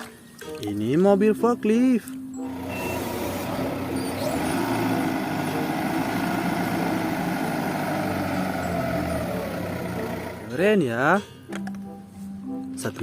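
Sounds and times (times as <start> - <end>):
motor humming: 2.4 - 10.5.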